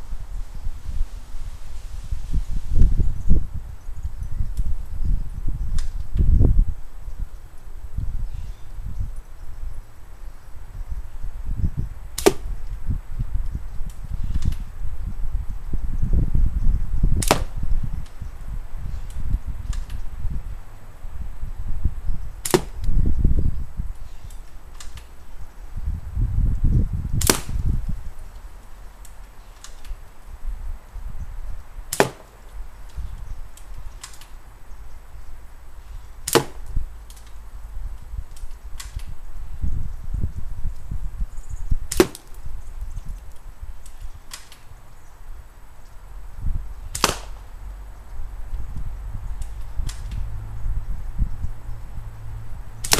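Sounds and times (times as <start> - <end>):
airsoft rifle shots: 17.2 - 17.6, 27.2 - 27.6, 31.9 - 32.4, 36.3 - 36.7, 41.9 - 42.3, 46.9 - 47.4.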